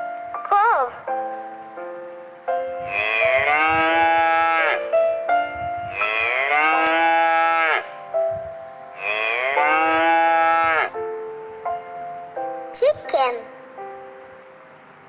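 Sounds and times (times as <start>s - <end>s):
cow mooing: 2.8s - 4.9s, 5.9s - 8.1s, 9.0s - 11.0s.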